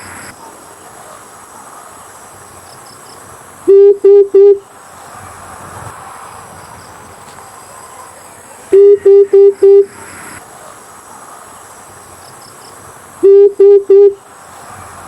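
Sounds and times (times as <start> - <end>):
dove hooting: 8.7 - 9.9, 13.2 - 14.2.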